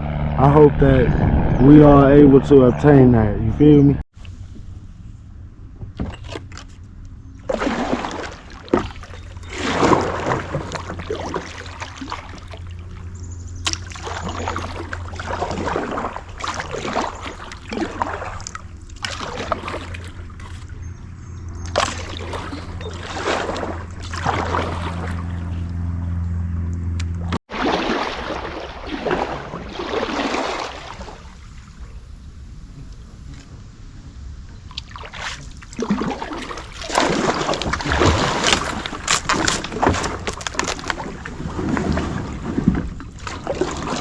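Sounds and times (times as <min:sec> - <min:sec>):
low hum: 0:00.0 - 0:44.0
paddle strokes splashing water: 0:07.4 - 0:26.1, 0:27.2 - 0:33.5, 0:34.6 - 0:44.0.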